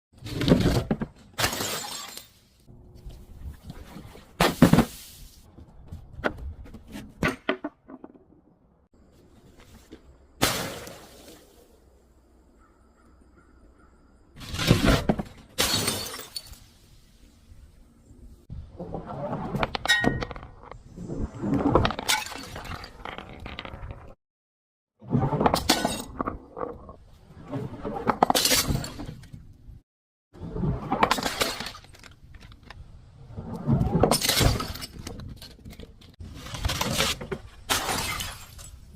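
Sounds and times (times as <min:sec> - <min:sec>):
objects shattering and crunching: 0:00.3 - 0:02.6, 0:14.4 - 0:16.8, 0:21.6 - 0:23.6, 0:33.8 - 0:38.9
glass bottles smashing: 0:01.4 - 0:02.5, 0:15.6 - 0:16.8, 0:34.1 - 0:35.1, 0:37.7 - 0:38.9.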